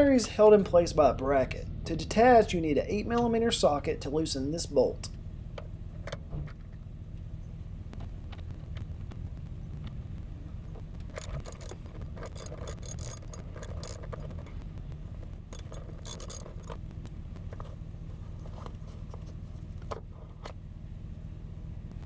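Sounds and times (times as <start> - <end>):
steady low rumble: 7.7 - 19.8, 21.8 - 22.0
socket wrench clicking and scraping: 11.1 - 14.4, 15.5 - 16.8.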